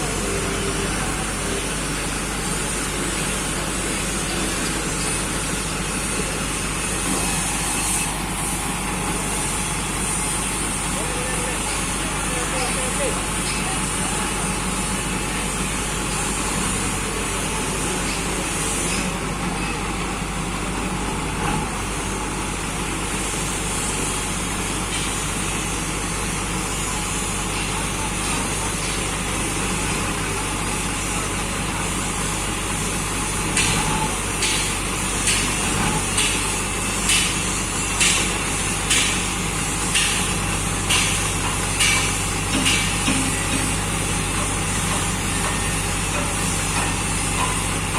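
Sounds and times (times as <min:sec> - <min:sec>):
diesel engine droning: 0:00.0 - 0:18.0.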